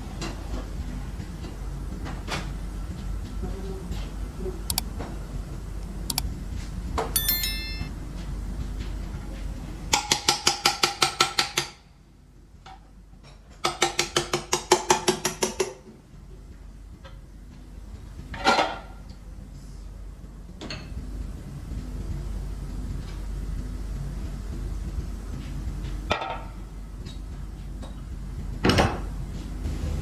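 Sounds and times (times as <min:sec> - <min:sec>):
sharp metallic clink: 0:07.2 - 0:07.9.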